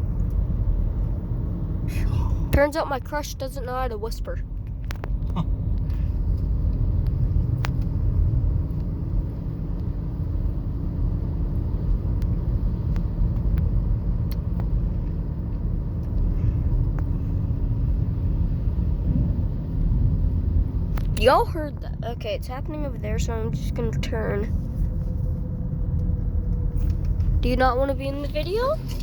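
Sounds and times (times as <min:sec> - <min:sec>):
road and engine rumble: 0:00.0 - 0:29.0
faint constant hum: 0:16.0 - 0:29.0.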